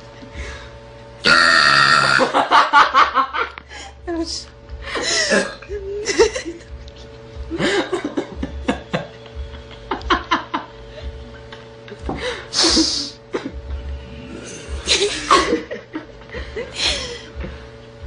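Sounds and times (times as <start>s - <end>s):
low hum: 0.0s - 18.0s
person laughing: 2.0s - 3.6s, 4.9s - 6.8s, 7.5s - 13.6s, 14.7s - 17.6s.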